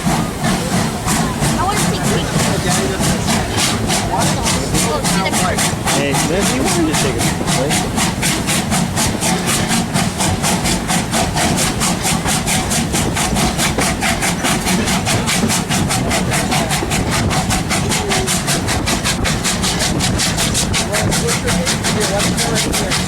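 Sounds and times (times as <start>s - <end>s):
steam train chugging: 0.0s - 23.0s.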